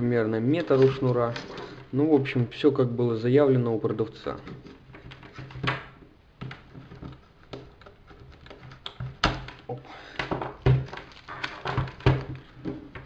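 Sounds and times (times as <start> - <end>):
handling clicks and knocks: 4.2 - 13.0.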